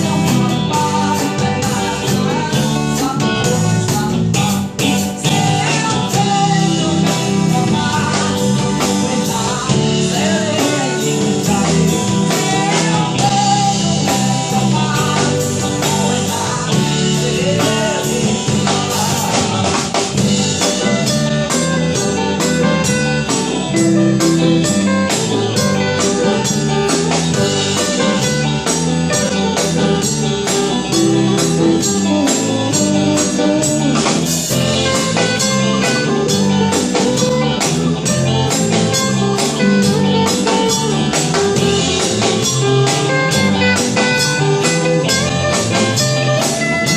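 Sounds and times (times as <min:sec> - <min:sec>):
man singing: 0:00.0 - 0:46.9
rock band playing: 0:00.0 - 0:46.9
steady drum beat: 0:00.0 - 0:46.9.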